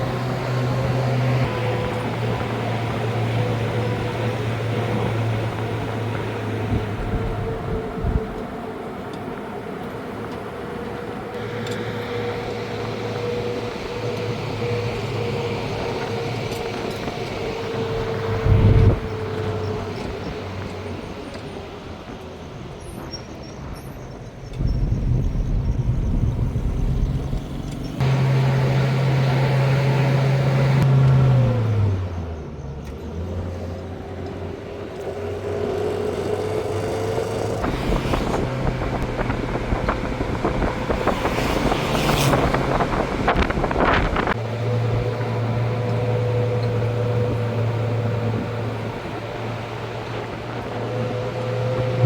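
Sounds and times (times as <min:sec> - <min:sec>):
vehicle engine running: 0:24.5 - 0:52.0.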